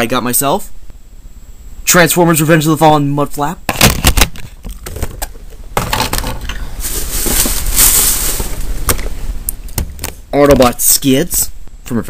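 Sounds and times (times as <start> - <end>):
plastic packaging crinkling: 5.8 - 9.2.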